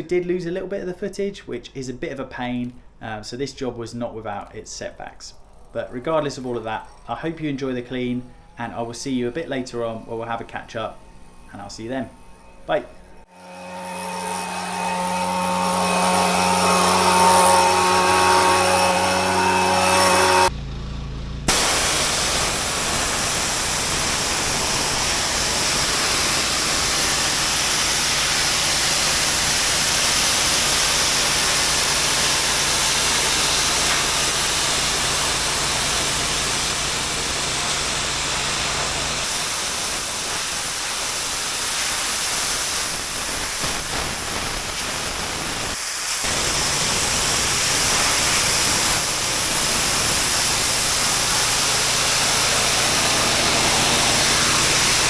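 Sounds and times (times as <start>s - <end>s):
pressure washer engine humming: 13.2s - 55.0s
water jet hissing on paving: 21.5s - 55.0s.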